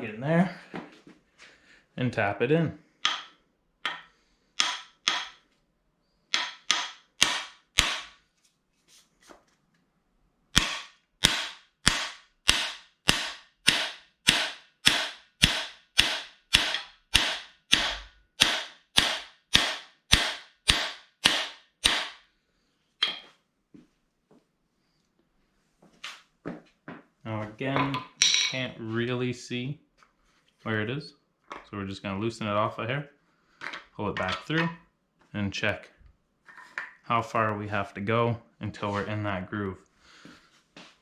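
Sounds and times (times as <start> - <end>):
hammer striking metal bar: 3.0 - 5.4, 6.4 - 8.2, 10.6 - 22.2, 23.0 - 23.3.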